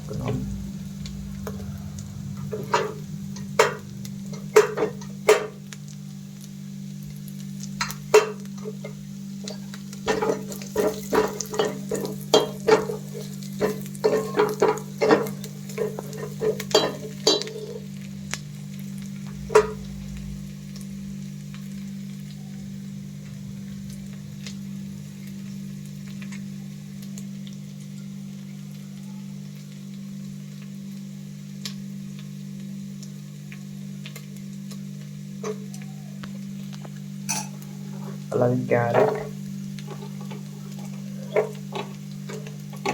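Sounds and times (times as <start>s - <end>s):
steady low hum: 0.0s - 27.6s
faint frying sizzle: 0.0s - 42.9s
spatula striking metal pan: 2.5s - 5.6s, 10.1s - 17.8s.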